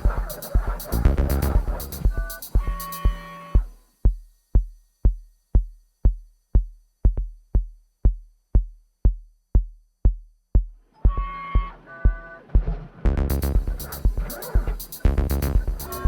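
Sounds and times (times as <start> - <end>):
synth chords: 0.0 - 3.2, 13.1 - 16.0
electronic kick drum beat: 0.0 - 16.0.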